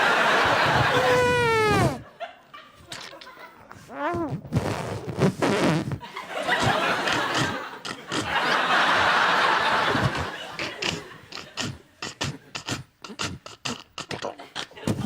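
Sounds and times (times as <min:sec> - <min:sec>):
studio audience laughing: 0:00.0 - 0:03.8, 0:06.0 - 0:11.6
mouth sound effects into microphone: 0:00.5 - 0:02.1, 0:03.6 - 0:06.0, 0:10.0 - 0:15.0.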